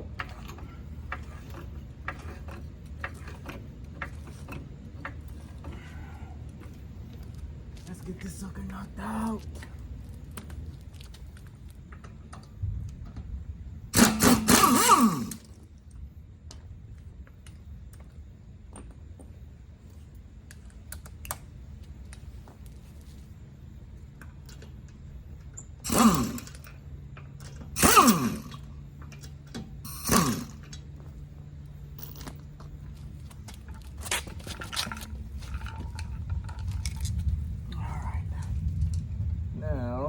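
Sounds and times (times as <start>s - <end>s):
faint steady hum: 0.0s - 40.0s
impact wrench bursts: 13.9s - 15.5s, 25.8s - 26.7s, 27.6s - 28.7s, 29.8s - 30.8s
tool clicks and scrapes: 14.0s - 15.5s, 25.8s - 26.7s, 27.5s - 28.6s, 29.9s - 30.8s.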